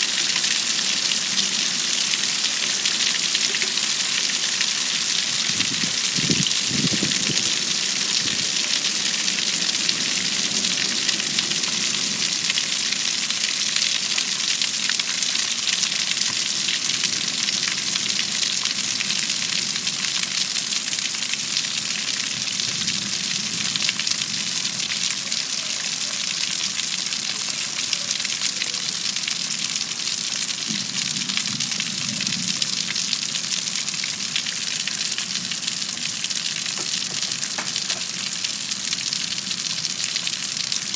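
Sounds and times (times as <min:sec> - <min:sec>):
heavy rain falling: 0:00.0 - 0:40.9.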